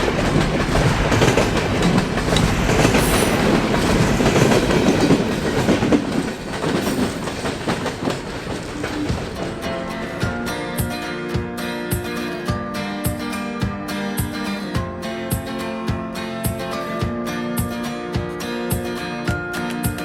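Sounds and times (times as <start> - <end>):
train wheels clicking over rail joints: 0.0 - 10.9.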